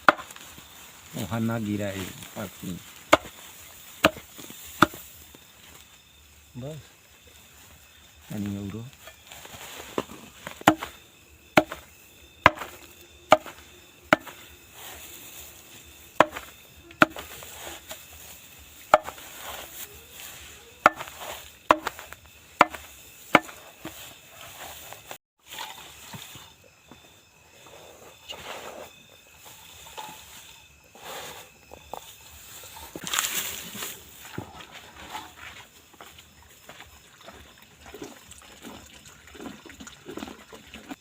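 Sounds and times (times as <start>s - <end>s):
blade chopping fodder: 11.6s - 14.5s, 16.2s - 17.9s.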